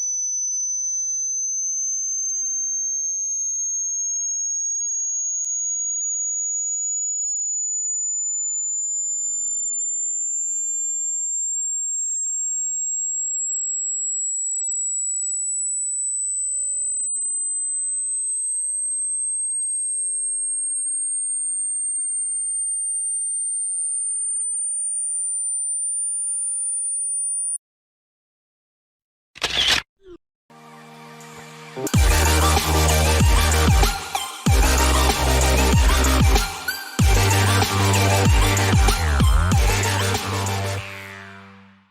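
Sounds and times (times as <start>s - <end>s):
high electronic tone rising: 30.6s - 41.9s.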